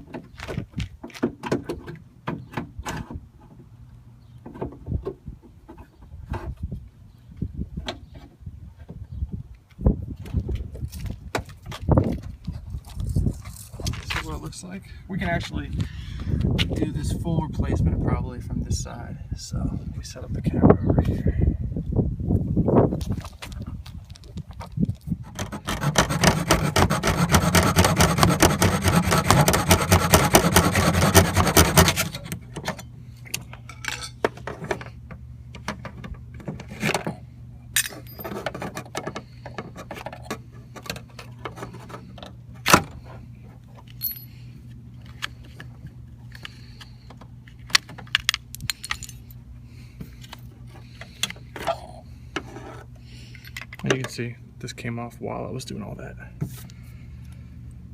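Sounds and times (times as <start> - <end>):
loud rasping rattle: 25.3 - 32.3.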